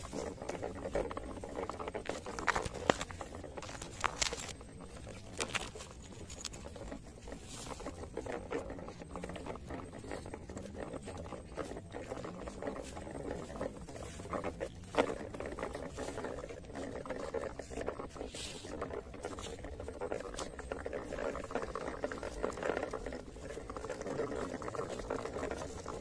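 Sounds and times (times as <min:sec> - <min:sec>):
scattered clicks: 0:00.0 - 0:17.3
toy truck wheels crackling over leaves: 0:00.0 - 0:26.0.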